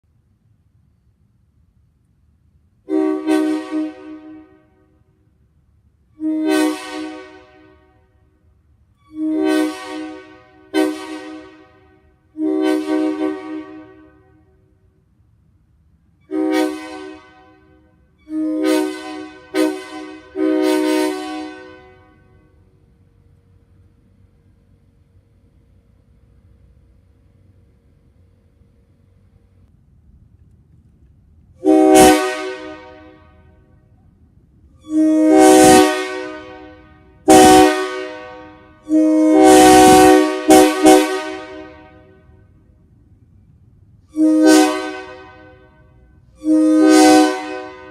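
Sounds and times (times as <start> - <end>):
locomotive air horn blasts: 2.8 - 5.1, 6.1 - 14.8, 16.2 - 22.8, 31.6 - 34.0, 34.7 - 42.6, 44.0 - 47.9.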